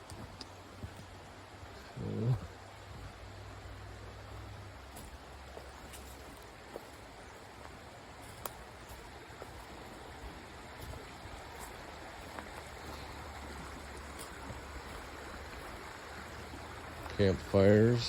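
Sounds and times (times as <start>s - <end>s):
creek water rushing over rocks: 0.0s - 18.0s
faint ticks: 8.4s - 8.6s.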